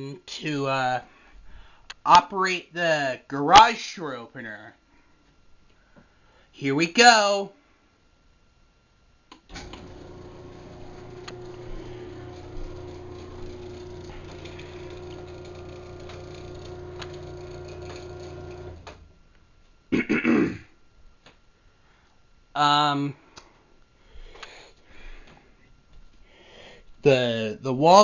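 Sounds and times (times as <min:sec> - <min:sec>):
garage door opener motor humming: 0:09.4 - 0:19.3
person clearing throat: 0:19.9 - 0:20.8.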